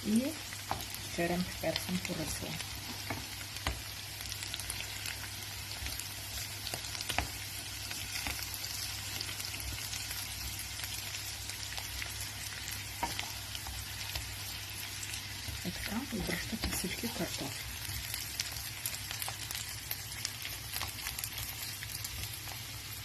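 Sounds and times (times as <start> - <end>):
potatoes sizzling in a pan: 0.0 - 23.0.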